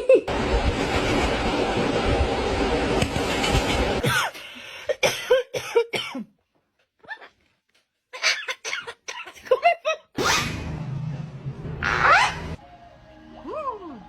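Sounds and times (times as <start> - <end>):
parrot imitating coughing: 8.2 - 9.4.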